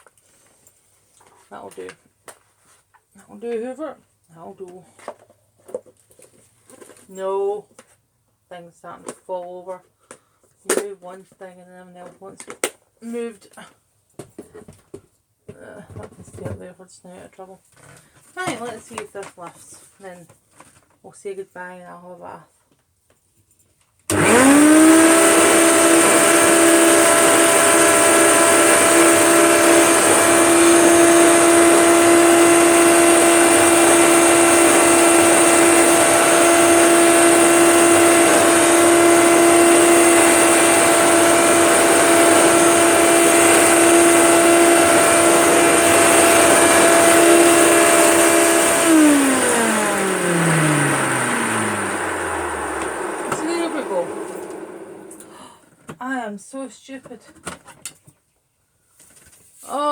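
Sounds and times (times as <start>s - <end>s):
motor winding down whine: 24.1s - 55.4s
vacuum cleaner running: 24.1s - 55.6s.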